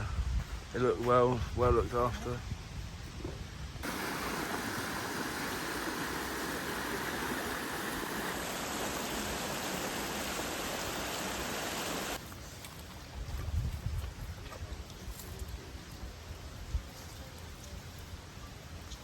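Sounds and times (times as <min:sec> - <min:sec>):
steady rushing noise: 0:03.8 - 0:12.2.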